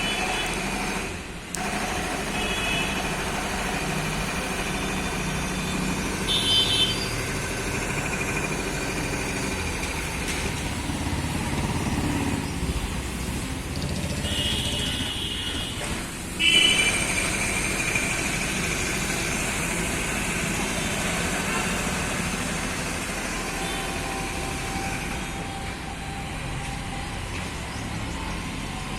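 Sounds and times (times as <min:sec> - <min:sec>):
vehicle engine running: 0:00.0 - 0:15.6, 0:16.5 - 0:25.9
road traffic noise: 0:00.0 - 0:28.9.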